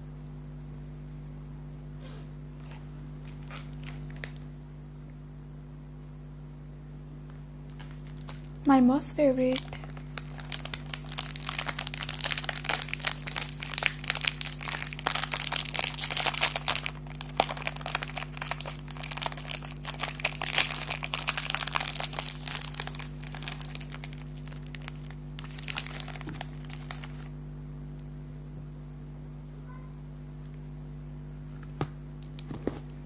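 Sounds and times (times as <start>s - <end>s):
plastic wrapper crinkling: 3.2s - 4.5s, 7.6s - 27.4s, 31.6s - 32.9s.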